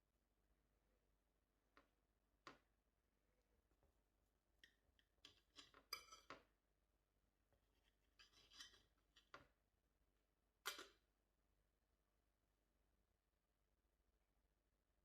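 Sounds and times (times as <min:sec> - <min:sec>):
kitchen utensils and dishes clinking: 0:05.3 - 0:06.4.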